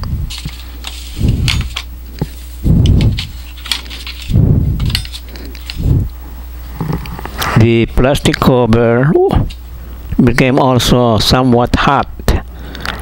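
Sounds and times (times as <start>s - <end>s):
steady low hum: 0.0s - 13.0s
dull low thumps: 2.6s - 3.4s, 4.3s - 4.9s, 5.8s - 6.2s.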